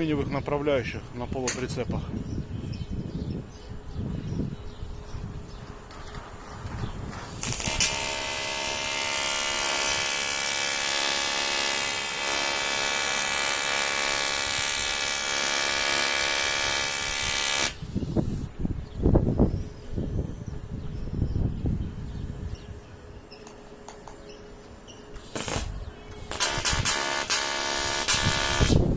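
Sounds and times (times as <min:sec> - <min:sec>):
welder click: 0:07.2 - 0:17.9, 0:25.2 - 0:28.8
welding arc buzzing: 0:07.2 - 0:18.5, 0:25.1 - 0:28.9.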